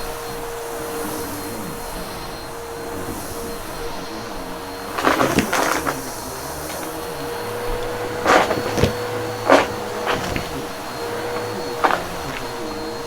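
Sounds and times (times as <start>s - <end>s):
vacuum cleaner humming: 0.0s - 13.0s
vacuum sucking crunchy debris: 2.8s - 13.0s.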